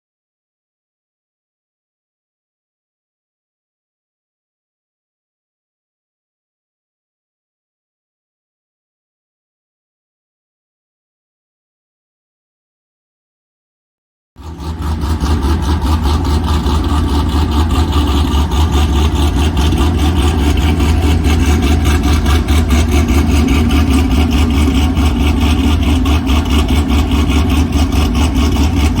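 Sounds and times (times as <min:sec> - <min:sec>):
car engine idling with choppy pulse: 0:14.4 - 0:29.0.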